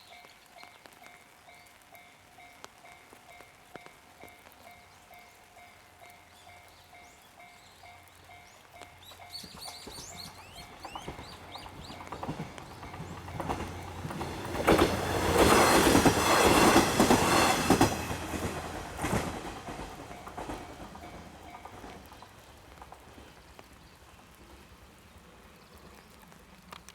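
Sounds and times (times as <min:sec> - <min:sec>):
diesel train passing: 0:06.0 - 0:23.4
train wheels clacking over rail joints: 0:09.2 - 0:23.3.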